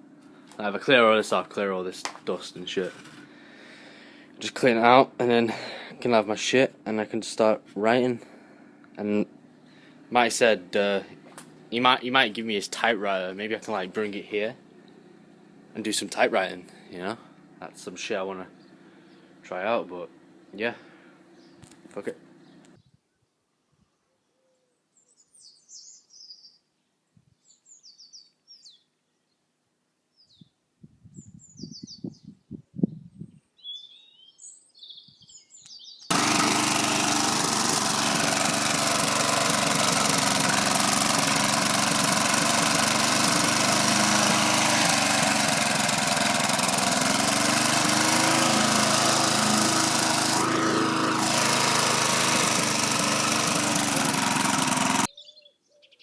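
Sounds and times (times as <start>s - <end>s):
lawn mower engine running: 0.0s - 6.0s, 7.6s - 17.8s, 18.5s - 22.7s, 36.1s - 55.1s
birds chirping: 9.0s - 26.7s, 32.9s - 41.0s, 46.4s - 56.0s.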